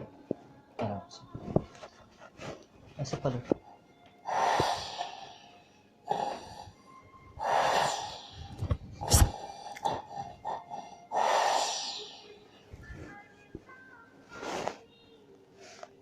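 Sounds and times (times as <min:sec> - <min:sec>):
person breathing hoarsely: 0:04.2 - 0:12.5.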